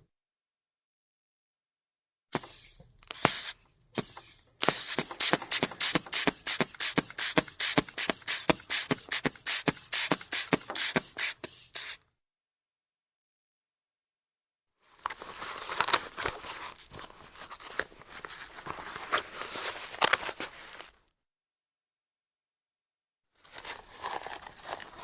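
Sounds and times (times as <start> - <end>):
inflation bulb squeezes: 2.4 - 12.0.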